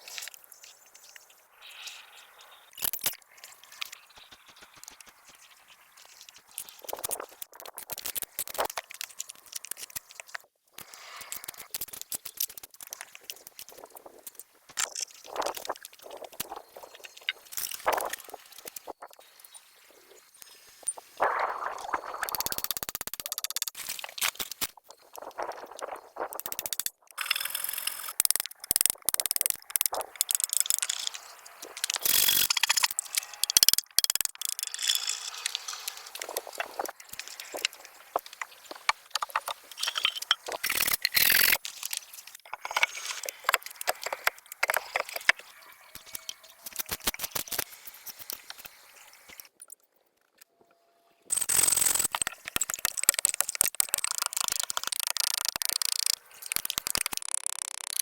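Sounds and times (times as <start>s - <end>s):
clicks knocks and scrapes on wood: 35.4s - 49.4s.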